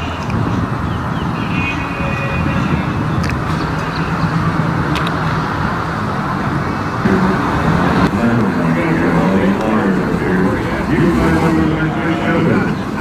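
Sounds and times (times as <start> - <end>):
car engine rumbling: 0.0 - 13.0
light clicks: 3.2 - 5.8.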